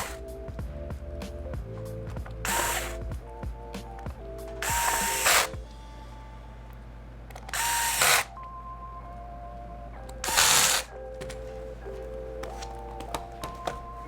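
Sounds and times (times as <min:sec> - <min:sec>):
electric screwdriver whirring: 0:00.0 - 0:00.2, 0:02.4 - 0:03.0, 0:04.6 - 0:05.6, 0:07.4 - 0:08.3, 0:10.2 - 0:10.9
background music: 0:00.0 - 0:14.0.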